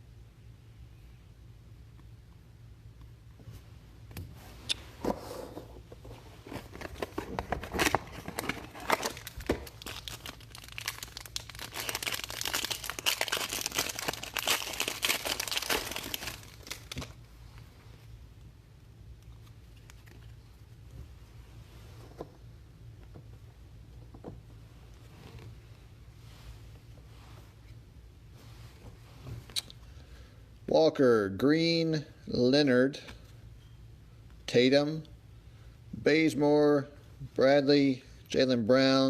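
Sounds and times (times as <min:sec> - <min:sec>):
foil wrapper tearing and crinkling: 0:07.6 - 0:17.2.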